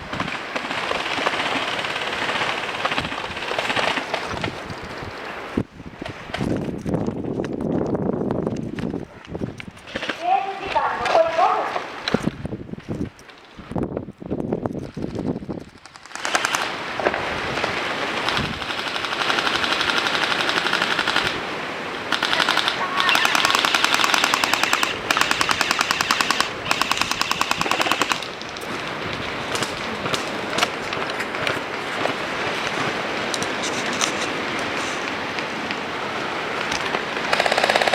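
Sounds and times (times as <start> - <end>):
airsoft guns firing bursts: 15.8 - 16.7, 18.2 - 21.4, 22.1 - 28.3, 37.3 - 37.9.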